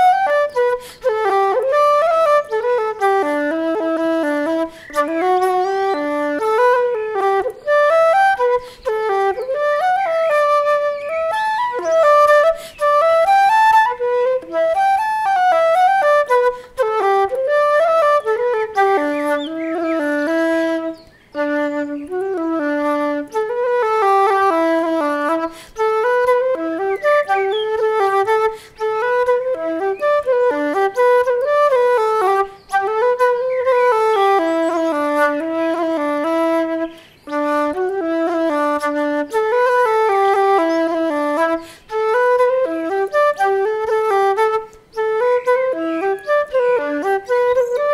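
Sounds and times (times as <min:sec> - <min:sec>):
flute melody: 0:00.0 - 0:47.9
instrumental music with quick runs: 0:00.0 - 0:47.9
flute player breaths: 0:00.7 - 0:01.1, 0:04.6 - 0:05.0, 0:08.6 - 0:08.9, 0:12.4 - 0:12.9, 0:16.5 - 0:16.8, 0:25.4 - 0:25.8, 0:28.5 - 0:28.8, 0:36.9 - 0:37.3, 0:41.5 - 0:41.9.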